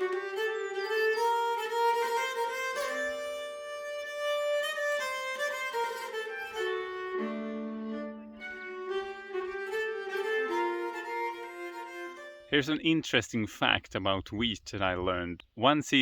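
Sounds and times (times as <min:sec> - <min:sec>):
bowed violin: 0:00.0 - 0:12.6
low string tones: 0:00.0 - 0:12.6.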